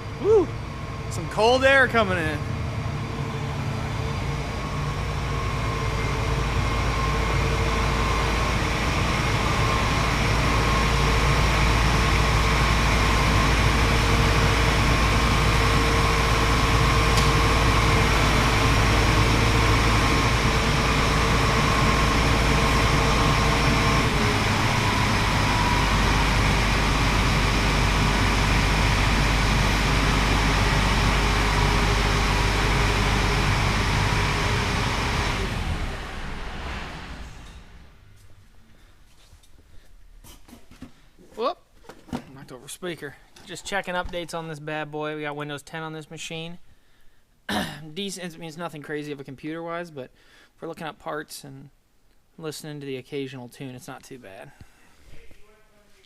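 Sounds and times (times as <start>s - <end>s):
diesel engine rumbling: 0.0s - 39.1s
engine whine: 0.0s - 39.6s.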